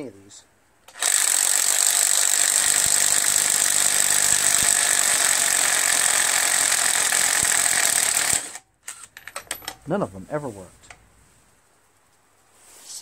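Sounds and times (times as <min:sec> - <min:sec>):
cordless drill running: 0:00.9 - 0:09.0.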